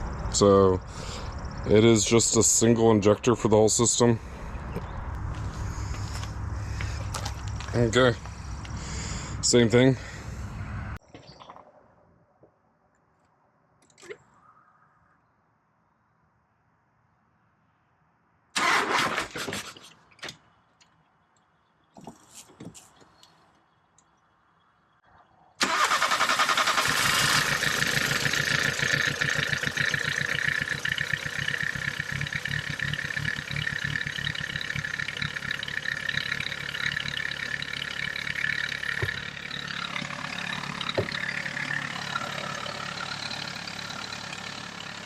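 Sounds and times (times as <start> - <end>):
car engine cranking and starting: 0.0 - 11.0, 18.6 - 19.3, 25.6 - 45.0
car engine idling: 0.0 - 11.0, 25.6 - 45.0.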